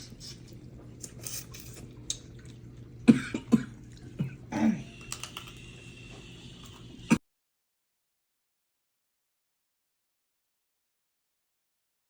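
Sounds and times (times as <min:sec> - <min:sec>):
person coughing: 0:03.1 - 0:05.0.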